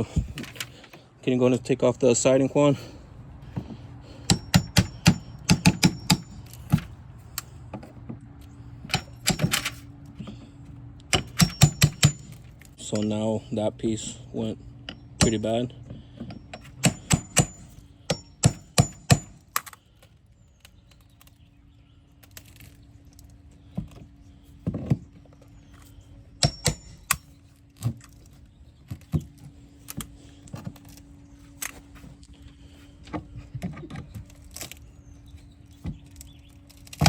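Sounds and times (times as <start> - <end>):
faint steady hum: 0.0 - 37.0
siding panels snapping and clicking: 8.9 - 9.8.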